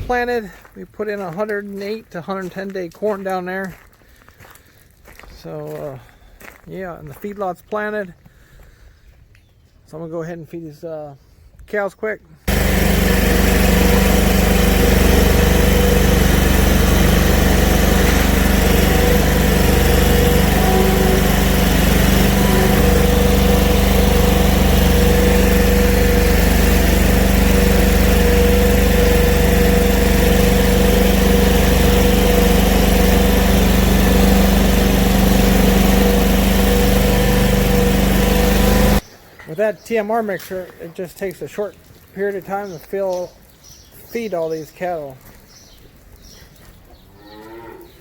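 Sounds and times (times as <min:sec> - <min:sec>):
engine running steadily: 0:12.5 - 0:39.0.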